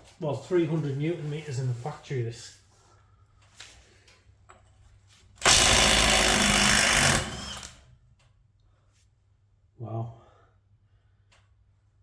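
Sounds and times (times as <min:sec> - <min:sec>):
impact wrench hammering: 0:05.4 - 0:07.8.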